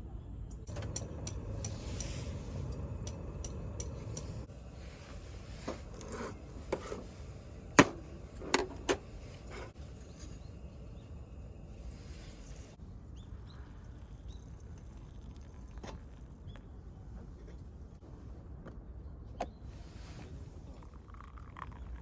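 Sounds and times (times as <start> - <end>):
low steady rumble: 0.0 - 15.0.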